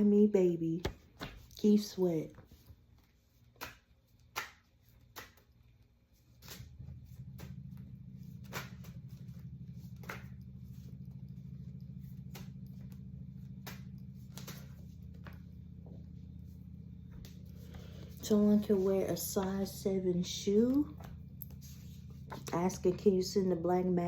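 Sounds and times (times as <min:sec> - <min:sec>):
steady low hum: 0:00.0 - 0:24.0
cards clicking and tapping: 0:02.9 - 0:05.8, 0:10.0 - 0:10.5.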